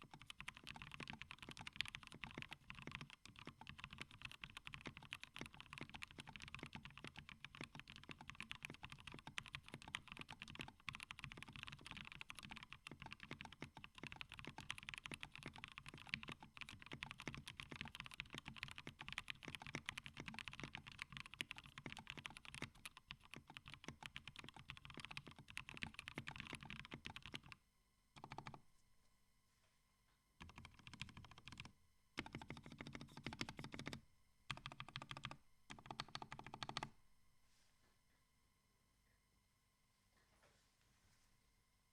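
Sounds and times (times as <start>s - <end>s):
fast mechanical keyboard typing: 0.0s - 27.6s, 28.2s - 28.6s, 30.4s - 36.9s.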